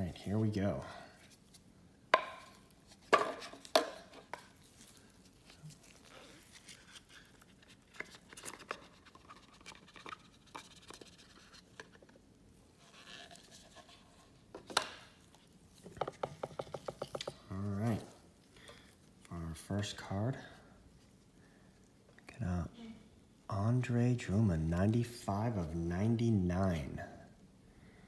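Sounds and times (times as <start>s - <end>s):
cardboard and wrapping crinkling: 2.3s - 19.3s.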